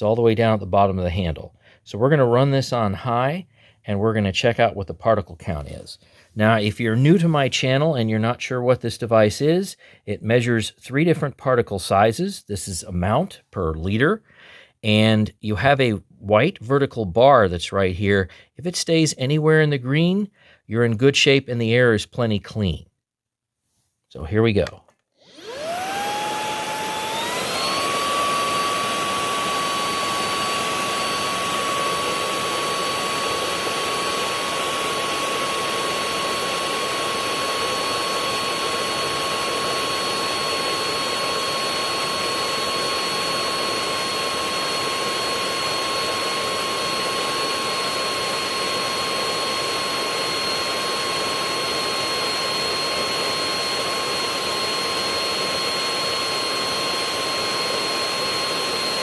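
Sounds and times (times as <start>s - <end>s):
stick vacuum running: 25.2s - 59.0s.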